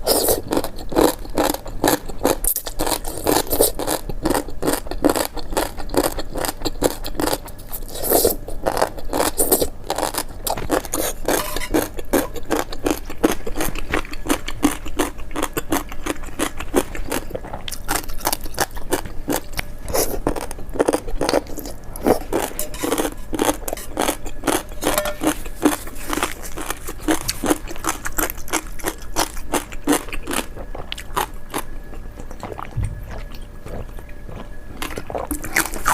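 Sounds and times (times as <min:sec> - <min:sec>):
crunching and scraping: 0:07.7 - 0:32.0.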